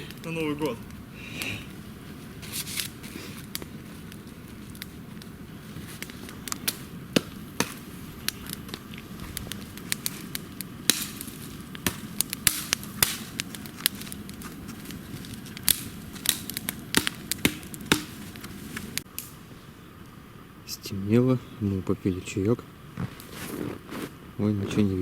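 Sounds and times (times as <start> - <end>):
campfire crackling and popping: 0.0 - 25.0
low hiss of burning wood: 0.0 - 25.0.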